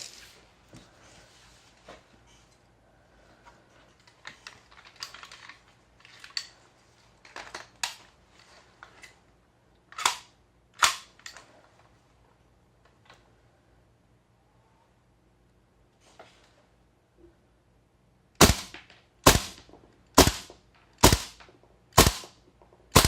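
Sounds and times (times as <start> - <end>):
mechanical clacks of gun handling: 3.8 - 11.6
airsoft rifle shots: 18.4 - 23.0.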